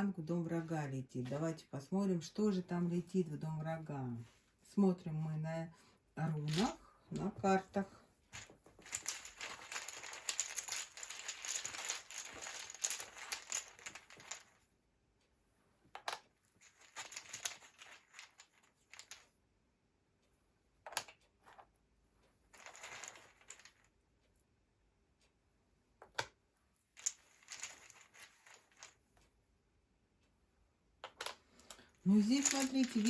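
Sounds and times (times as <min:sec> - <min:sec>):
cards rustling: 0:31.8 - 0:33.0.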